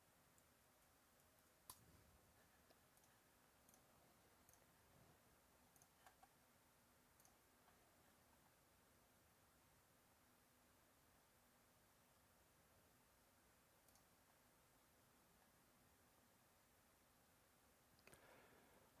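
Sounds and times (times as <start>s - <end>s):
mouse and keyboard clicks: 5.7s - 6.4s.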